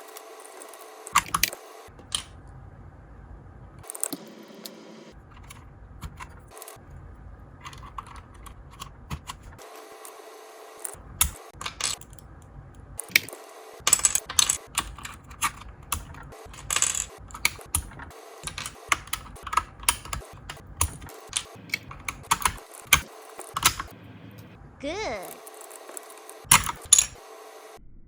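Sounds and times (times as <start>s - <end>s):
computer keyboard keys clacking: 13.9s - 23.9s.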